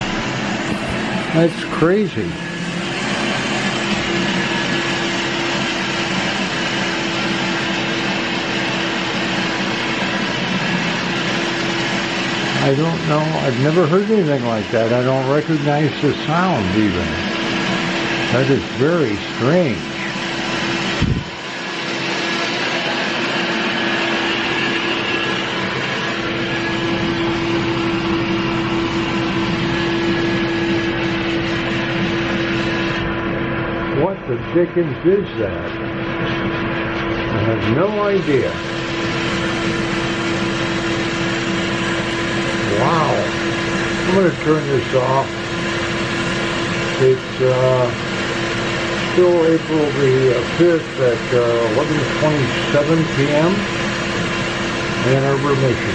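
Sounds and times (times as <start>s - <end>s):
broad rushing noise: 0.4s - 6.6s, 16.0s - 33.0s
constant hum: 12.6s - 21.5s.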